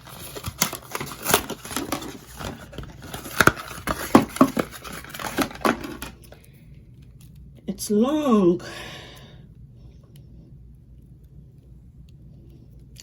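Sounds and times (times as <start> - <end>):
packaging crinkling: 0.0 - 6.4.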